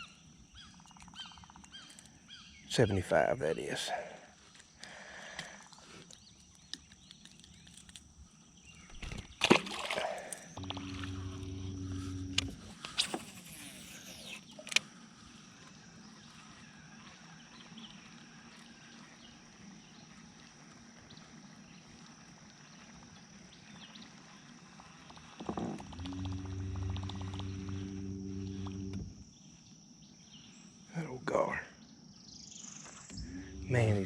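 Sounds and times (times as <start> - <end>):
river ambience: 8.2 - 21.4, 24.0 - 29.4, 33.1 - 34.0
high-pitched drone: 10.6 - 14.4, 25.9 - 29.2, 33.1 - 34.0
small motor humming: 10.6 - 14.6, 25.5 - 29.2, 33.1 - 34.0.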